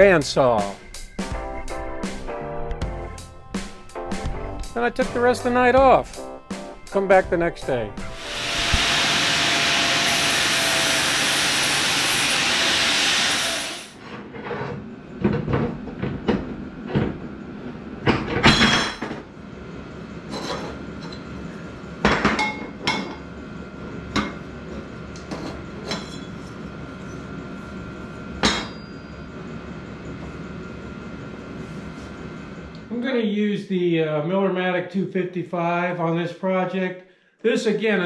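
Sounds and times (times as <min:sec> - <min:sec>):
loud steady hiss: 0:03.2 - 0:14.0.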